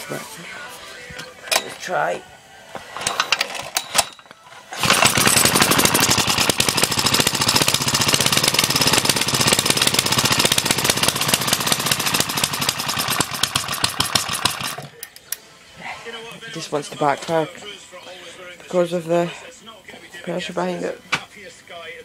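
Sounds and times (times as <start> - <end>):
small engine running fast: 4.8 - 14.9.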